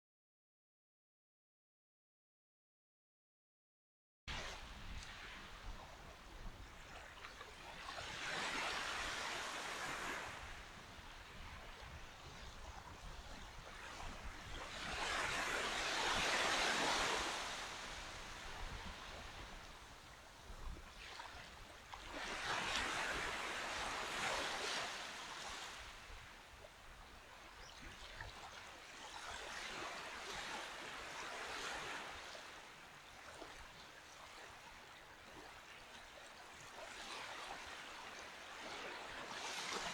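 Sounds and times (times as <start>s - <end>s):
small waves washing onto sand: 4.3s - 39.9s.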